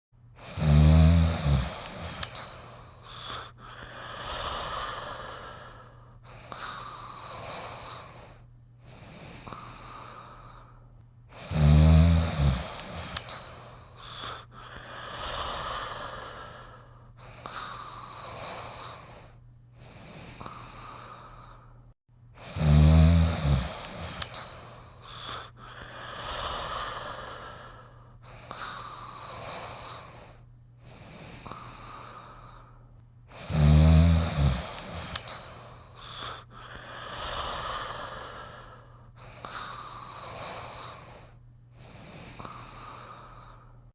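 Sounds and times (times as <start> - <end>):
cartoon snoring: 0.4 - 2.5, 11.4 - 16.6, 22.4 - 27.6, 33.3 - 43.1
wheezing breaths: 0.4 - 43.9.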